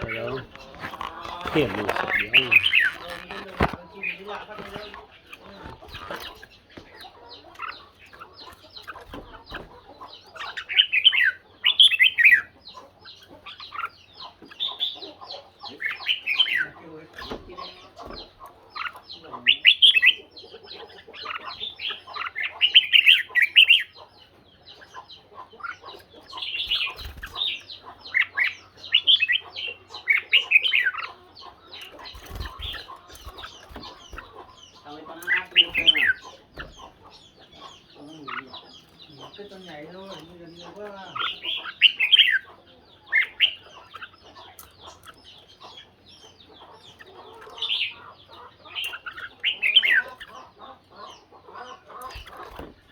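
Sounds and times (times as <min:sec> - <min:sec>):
birds warbling: 0:00.0 - 0:52.9
soft bird calls: 0:00.0 - 0:52.9.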